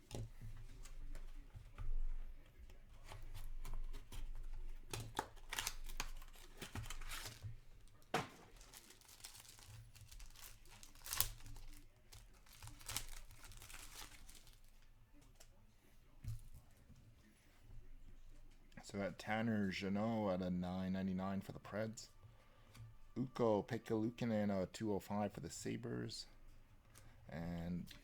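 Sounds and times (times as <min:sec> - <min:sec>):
wrapper tearing and crinkling: 0:04.4 - 0:14.8.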